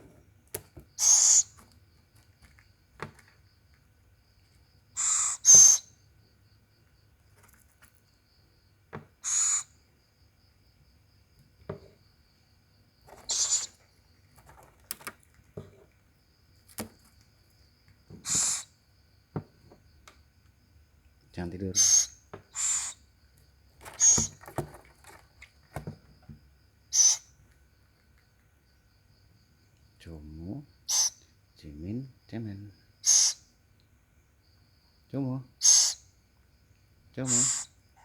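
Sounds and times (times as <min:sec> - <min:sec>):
owls hissing screeches: 0:01.0 - 0:01.6, 0:05.0 - 0:05.9, 0:09.2 - 0:09.7, 0:13.1 - 0:13.8, 0:18.2 - 0:18.8, 0:21.8 - 0:23.0, 0:23.9 - 0:24.4, 0:26.9 - 0:27.3, 0:30.9 - 0:31.2, 0:33.0 - 0:33.5, 0:35.6 - 0:36.0, 0:37.2 - 0:37.8.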